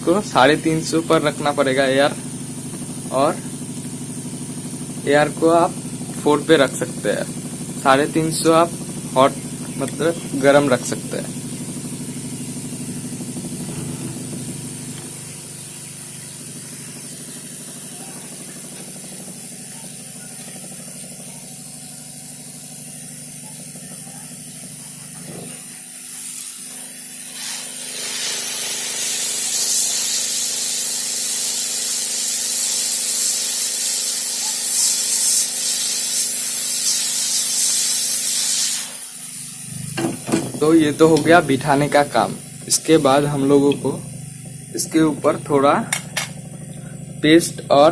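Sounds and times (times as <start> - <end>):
hot air gun hissing: 0.0 - 47.7
low hum: 11.6 - 19.3.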